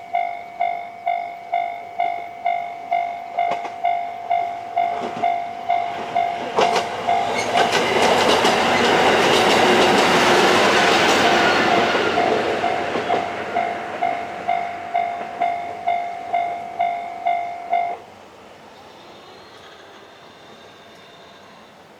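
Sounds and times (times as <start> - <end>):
level-crossing alarm dinging: 0.0 - 18.2
train passing: 0.0 - 21.9
wheels clicking over rail joints: 1.5 - 18.1.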